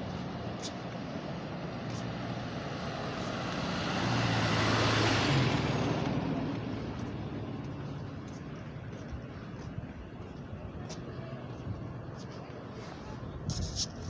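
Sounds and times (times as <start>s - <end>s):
vehicle driving past: 2.1s - 8.4s.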